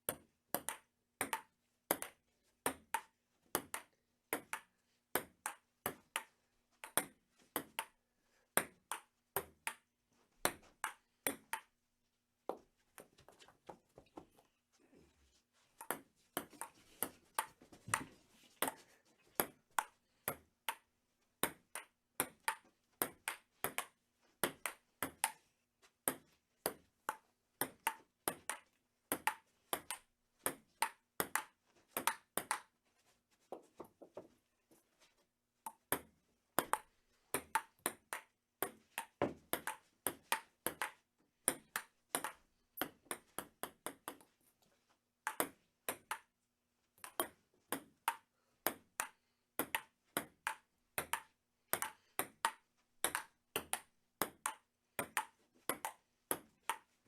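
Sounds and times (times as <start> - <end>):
ping-pong ball clicking: 47.0 - 56.9.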